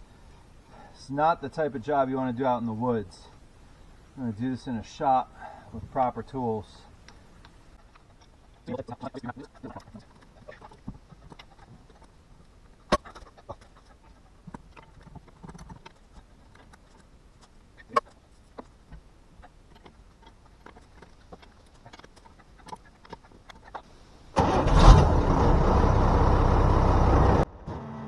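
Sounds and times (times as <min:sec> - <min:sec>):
diesel engine starting and running: 0:24.0 - 0:28.0.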